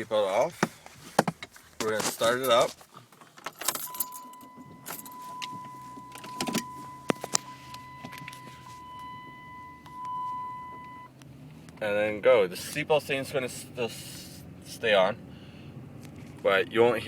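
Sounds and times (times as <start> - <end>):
car engine running: 0.0 - 17.0
keys clicking in ignition: 1.4 - 11.8.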